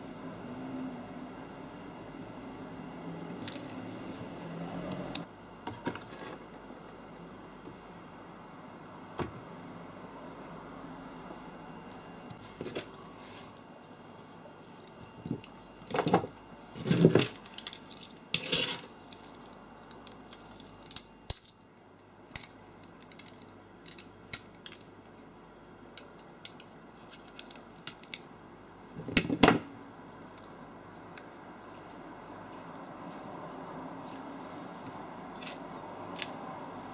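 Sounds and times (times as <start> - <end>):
metal parts and tools clinking: 14.6 - 21.6, 22.4 - 24.9, 26.0 - 28.3, 35.3 - 36.4.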